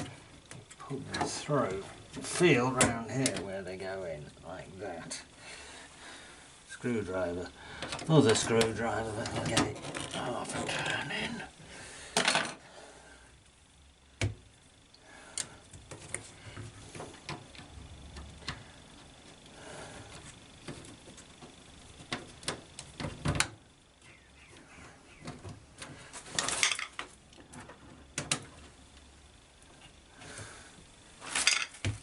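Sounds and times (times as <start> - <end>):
tools clattering: 26.3 - 27.0, 31.3 - 31.8.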